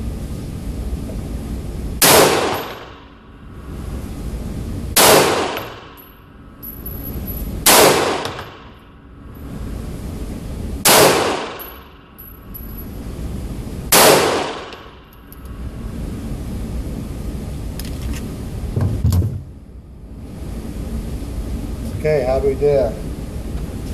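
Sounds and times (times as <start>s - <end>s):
echoing gunshots: 2.0s - 3.1s, 5.0s - 6.0s, 7.6s - 8.8s, 10.8s - 11.8s, 13.9s - 15.0s.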